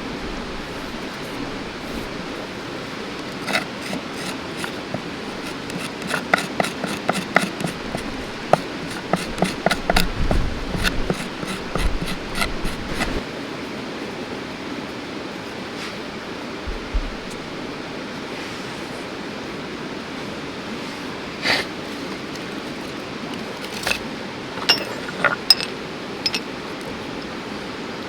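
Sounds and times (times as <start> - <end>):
objects knocking and tapping: 3.2 - 13.2, 24.6 - 26.5.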